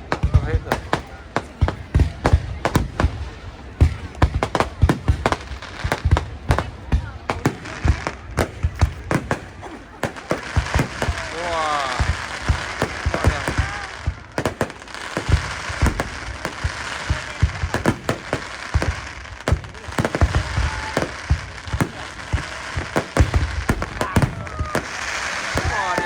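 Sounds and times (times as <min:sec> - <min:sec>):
fireworks bangs and booms: 0:00.0 - 0:26.0
fireworks hissing crackle: 0:00.0 - 0:26.0.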